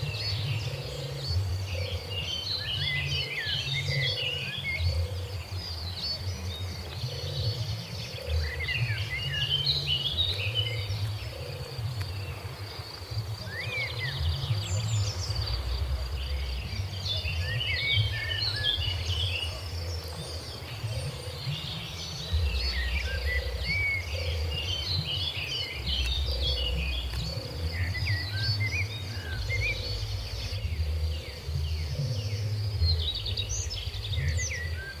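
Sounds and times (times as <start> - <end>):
small birds chirping: 0.0 - 35.0
low rumble: 7.6 - 35.0.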